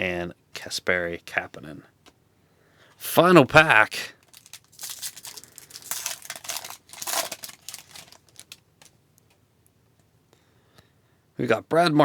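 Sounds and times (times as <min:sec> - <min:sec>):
foil wrapper tearing and crinkling: 0:04.2 - 0:08.9.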